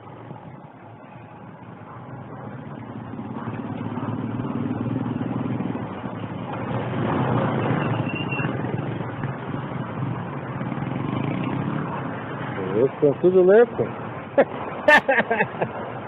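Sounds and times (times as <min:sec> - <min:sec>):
motorcycle engine running: 0:00.0 - 0:13.2.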